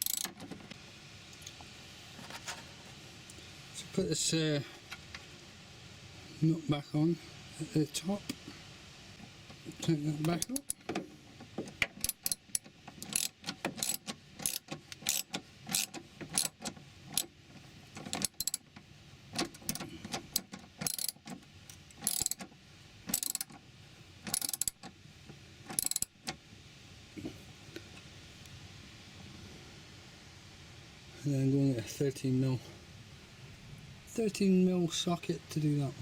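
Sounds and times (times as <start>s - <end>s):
ratchet wrench clicking: 0.0s - 0.4s, 10.2s - 10.8s, 11.9s - 17.3s, 18.0s - 18.7s, 19.4s - 22.5s, 23.1s - 23.6s, 24.3s - 24.9s, 25.7s - 26.2s.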